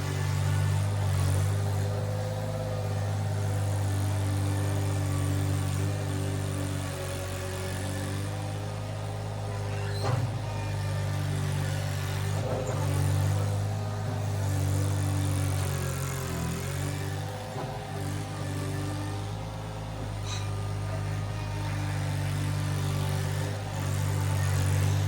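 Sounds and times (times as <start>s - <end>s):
skid steer engine running: 0.0s - 25.0s.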